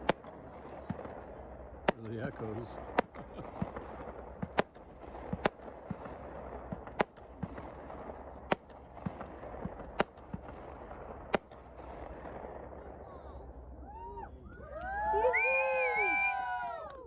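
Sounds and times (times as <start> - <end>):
fireworks cracking: 0.0 - 17.0.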